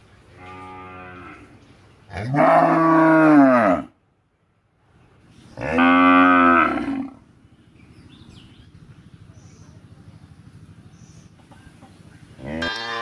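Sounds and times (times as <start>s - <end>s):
faint low rumbling: 0.0s - 13.0s.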